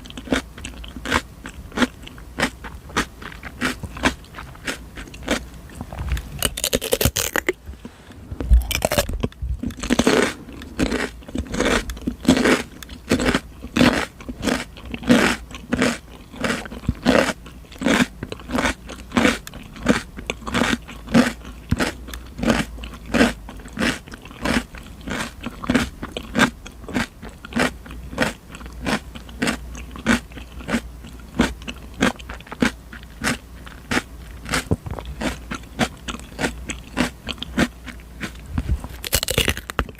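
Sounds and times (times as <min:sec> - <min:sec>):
crunchy chewing: 0:00.0 - 0:39.9
cucumber being bitten: 0:06.1 - 0:07.6, 0:08.4 - 0:18.1, 0:38.9 - 0:39.9.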